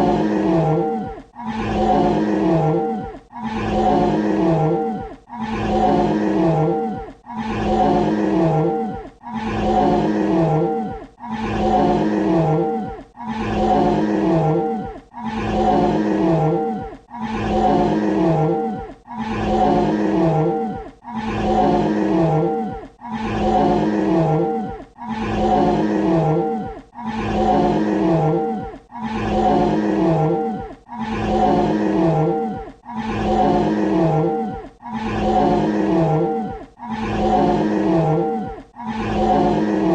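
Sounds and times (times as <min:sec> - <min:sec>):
dinosaur roar: 0:00.0 - 0:39.9.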